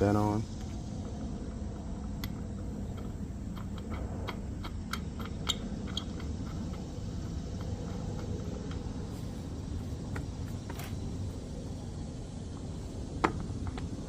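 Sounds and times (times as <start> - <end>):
steady low rumble: 0.0 - 14.0
light metallic clicks and taps: 2.2 - 9.0.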